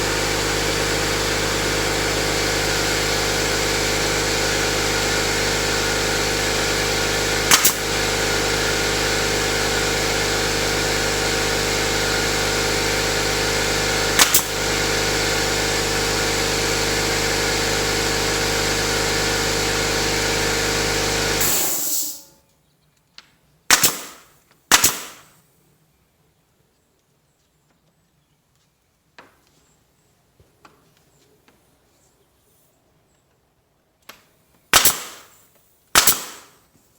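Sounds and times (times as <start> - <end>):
motor running: 0.0 - 22.2
sharp clicks: 7.5 - 7.8, 14.2 - 14.5, 23.7 - 25.2, 36.0 - 36.6.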